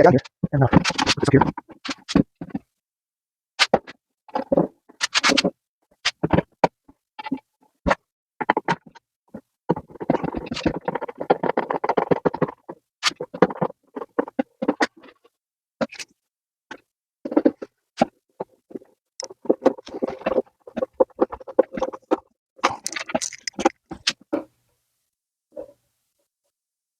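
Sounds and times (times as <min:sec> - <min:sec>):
wooden parts handled: 0:19.2 - 0:24.5.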